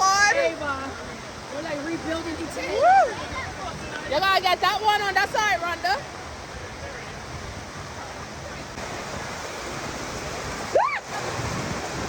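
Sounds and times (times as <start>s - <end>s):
short high whoop: 10.7s - 11.2s.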